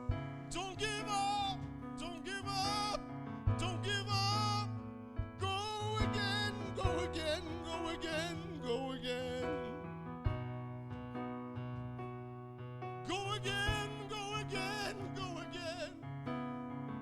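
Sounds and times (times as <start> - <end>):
church keyboard chords: 0.0 - 17.0
person singing: 0.5 - 3.0, 3.6 - 4.8, 5.4 - 9.9, 13.1 - 16.0.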